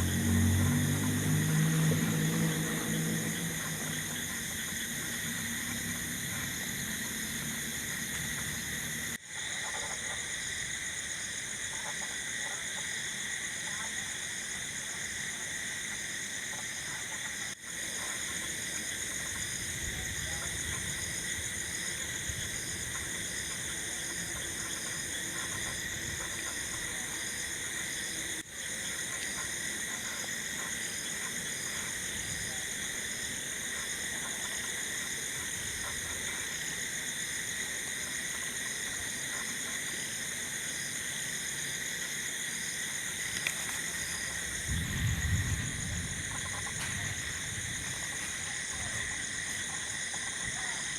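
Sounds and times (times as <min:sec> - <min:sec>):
insects trilling: 0:00.0 - 0:50.9
low rumble: 0:44.6 - 0:48.1.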